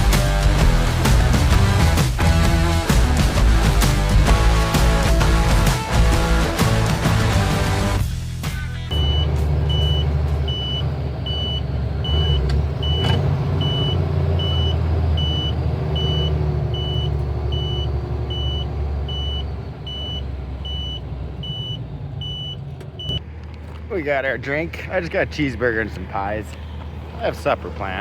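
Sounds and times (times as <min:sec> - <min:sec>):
truck engine running: 0:00.0 - 0:28.0
high electronic warning beeps: 0:08.9 - 0:23.2.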